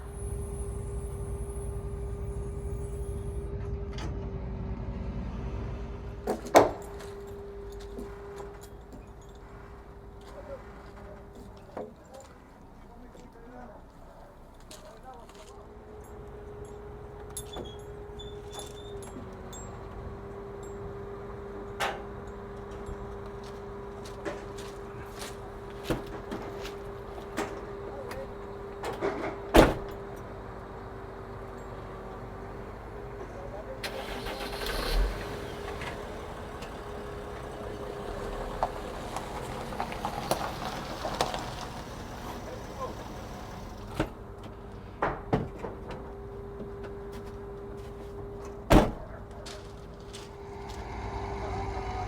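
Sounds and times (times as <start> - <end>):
steady engine hum: 0.0 - 52.0.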